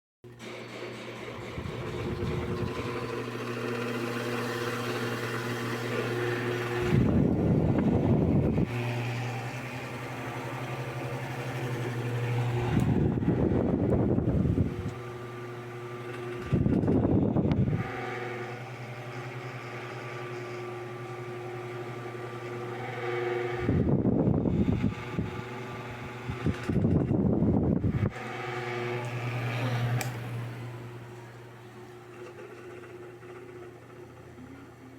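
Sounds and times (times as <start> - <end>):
electric fan humming: 0.3 - 34.9
wind buffeting microphone: 1.5 - 3.2, 6.8 - 8.8, 12.5 - 15.0, 16.4 - 17.8, 23.6 - 28.1.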